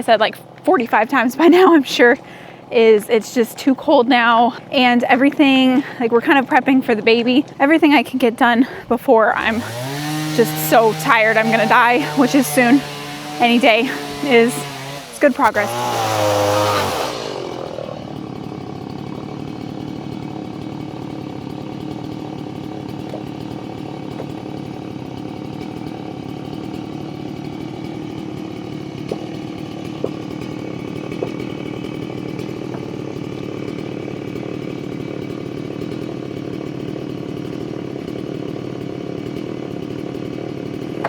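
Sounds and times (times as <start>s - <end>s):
small engine running: 0.0s - 41.0s.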